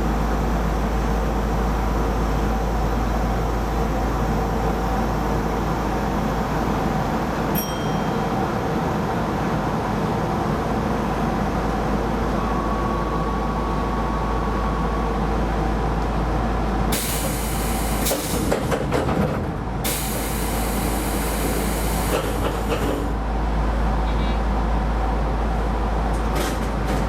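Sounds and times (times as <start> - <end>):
train wheels rumbling: 14.4 - 23.4
loud hiss: 16.9 - 18.5, 19.9 - 22.8.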